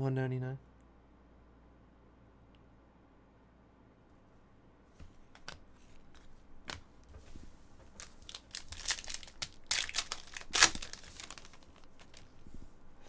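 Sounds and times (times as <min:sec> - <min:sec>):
wrapper crinkling and tearing: 0:07.9 - 0:12.4.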